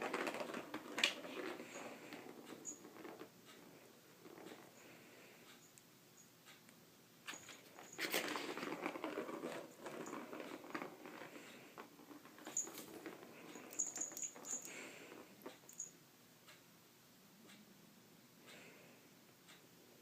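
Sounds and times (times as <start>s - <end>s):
rustling: 7.2s - 15.9s.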